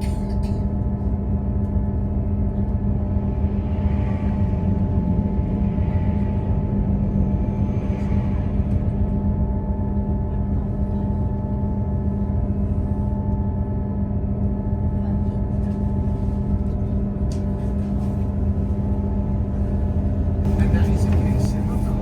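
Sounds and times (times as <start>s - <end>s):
train engine drone: 0.0s - 22.0s
train wheels rumbling on track: 15.8s - 22.0s.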